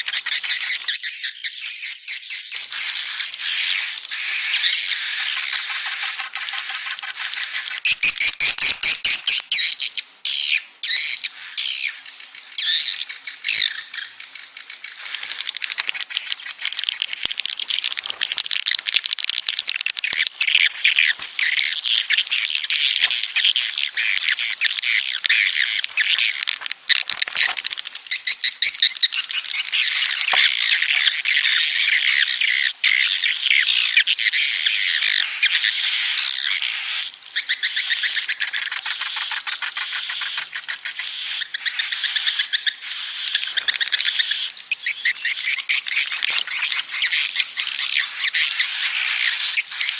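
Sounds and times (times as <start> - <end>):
swiftlets twittering: 14.9 - 27.9.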